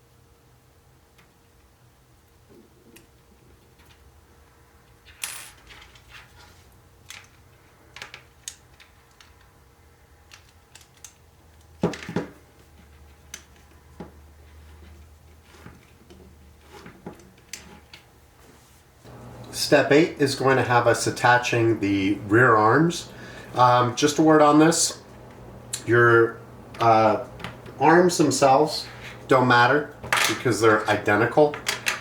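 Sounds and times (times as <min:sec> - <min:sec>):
small parts clicking and clattering: 0:02.9 - 0:04.2, 0:04.8 - 0:18.1, 0:30.0 - 0:32.0.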